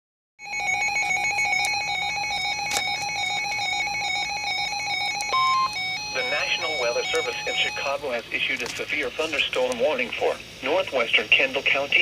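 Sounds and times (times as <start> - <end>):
short steady beep: 5.2 - 7.9.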